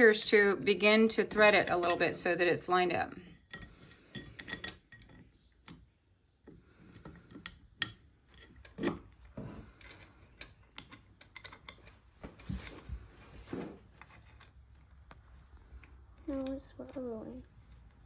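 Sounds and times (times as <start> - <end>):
parts clicking and tapping: 3.5 - 12.6.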